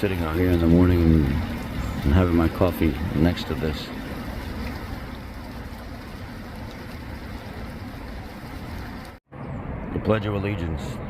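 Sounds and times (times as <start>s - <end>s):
rushing outdoor background noise: 0.0s - 11.0s.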